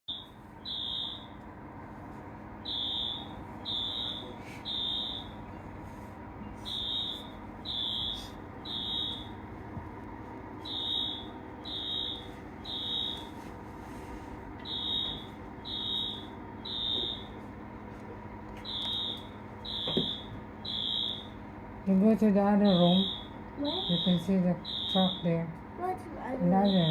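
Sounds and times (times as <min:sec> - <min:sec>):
fire alarm beeping: 0:00.1 - 0:01.4, 0:02.6 - 0:05.5, 0:06.6 - 0:09.5, 0:10.6 - 0:13.4, 0:14.6 - 0:17.5, 0:18.6 - 0:21.4, 0:22.6 - 0:25.6, 0:26.6 - 0:26.9.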